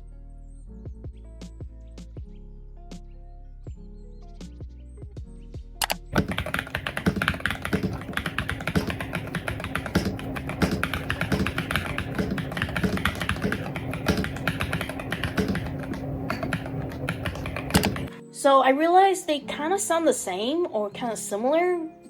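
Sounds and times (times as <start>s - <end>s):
fast typing on mechanical keyboard: 5.8s - 18.1s.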